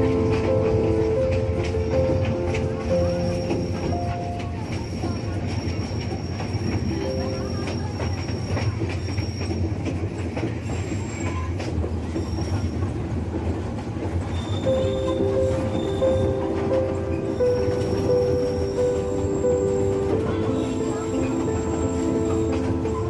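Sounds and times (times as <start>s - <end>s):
miniature train rumbling on rails: 0.0s - 23.0s.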